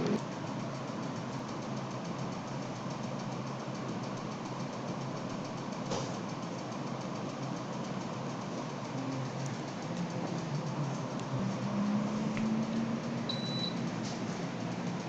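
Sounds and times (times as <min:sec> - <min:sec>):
air conditioner humming: 0:00.0 - 0:15.0.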